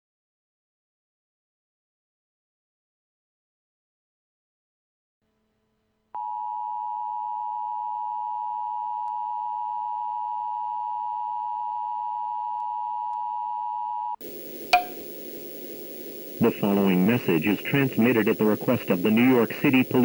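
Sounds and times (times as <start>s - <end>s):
faint hiss: 14.2s - 20.0s
two-note alert tone: 14.7s - 15.0s.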